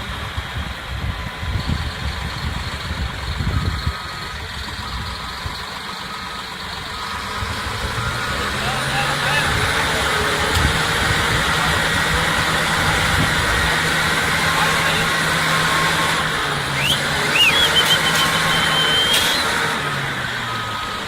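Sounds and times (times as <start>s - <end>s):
heavy diesel engine running: 0.0s - 21.0s
high whistle: 16.7s - 19.7s.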